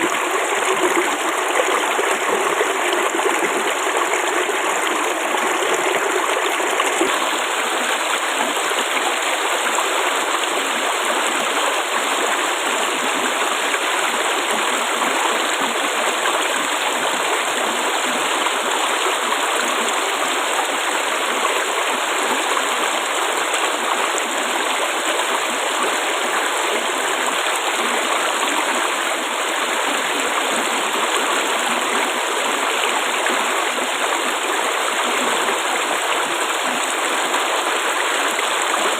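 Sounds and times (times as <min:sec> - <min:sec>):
water babbling: 0:00.0 - 0:38.9.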